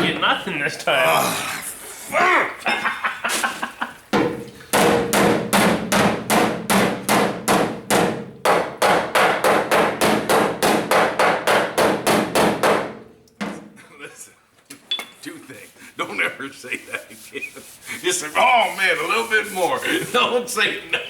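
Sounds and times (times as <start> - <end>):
hammer ringing on sheet metal: 4.2 - 13.1.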